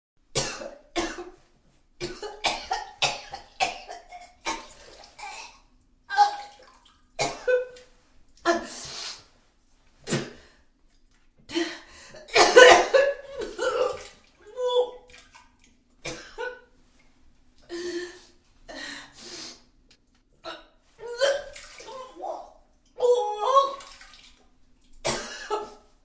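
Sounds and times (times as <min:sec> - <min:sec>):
woman retching and vomiting: 0:02.0 - 0:06.6, 0:07.2 - 0:07.8, 0:12.2 - 0:14.2, 0:25.0 - 0:25.8.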